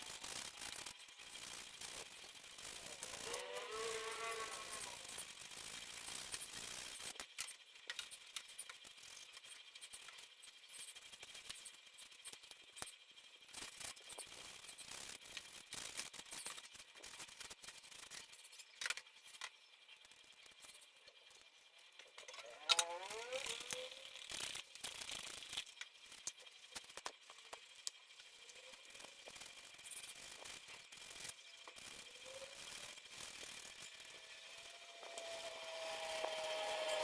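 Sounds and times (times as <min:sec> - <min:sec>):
computer parts clicking and rattling: 0:00.0 - 0:37.0
rising squeak: 0:34.2 - 0:37.0.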